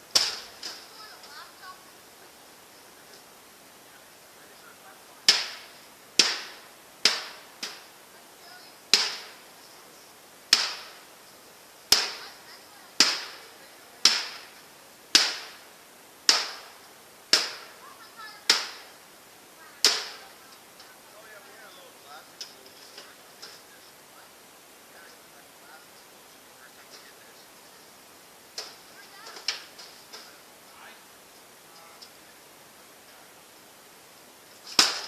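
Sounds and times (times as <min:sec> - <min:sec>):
golf club smashing microwave: 0:34.7 - 0:35.0.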